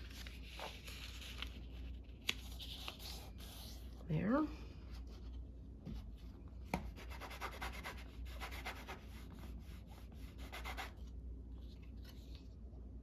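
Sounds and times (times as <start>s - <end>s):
rubbing strokes on paper: 6.9s - 11.0s.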